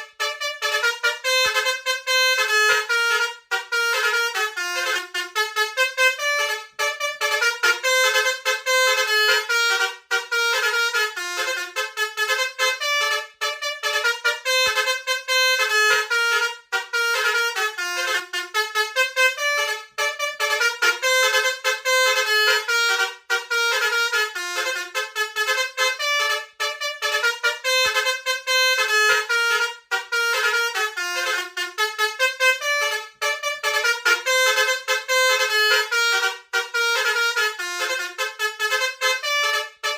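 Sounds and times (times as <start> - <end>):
musical air horn tune: 0.0 - 39.9.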